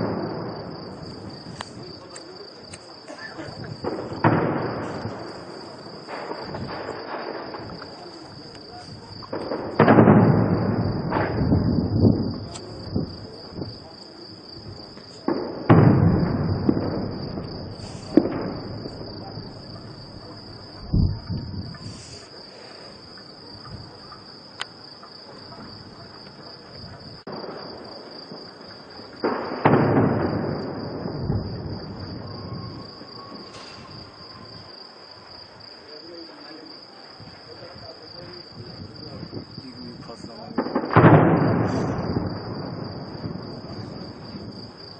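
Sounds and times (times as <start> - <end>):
distant heavy gunfire: 0.0 - 1.0, 3.8 - 7.7, 9.3 - 13.0, 15.2 - 20.7, 27.3 - 32.2, 40.5 - 43.8
crickets chirping: 0.0 - 44.9.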